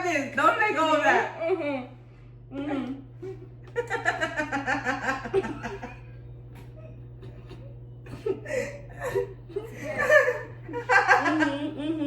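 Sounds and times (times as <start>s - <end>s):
young women giggling: 3.2s - 6.0s, 6.8s - 12.0s.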